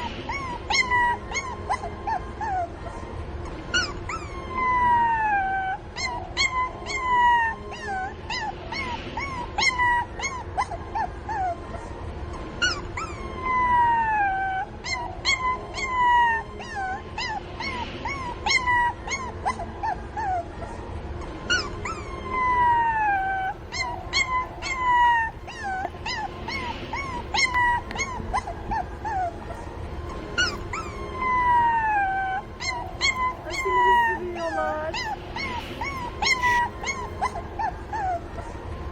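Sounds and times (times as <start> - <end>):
puppies whimpering and yelping: 0.0 - 38.9.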